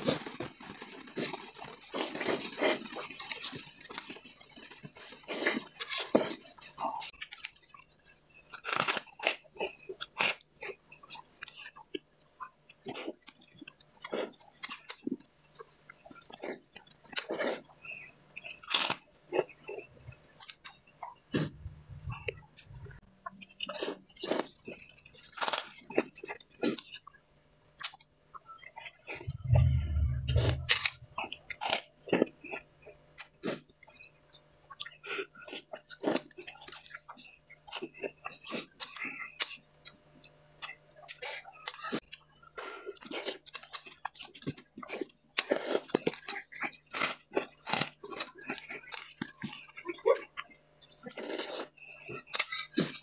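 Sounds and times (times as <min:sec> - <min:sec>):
chewing crunchy food: 0:00.0 - 0:53.0
short low thump: 0:29.3 - 0:31.2.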